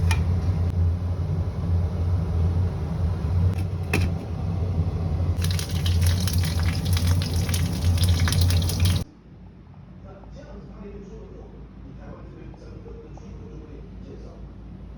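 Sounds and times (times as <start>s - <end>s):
water bubbling and hissing: 5.4s - 9.0s.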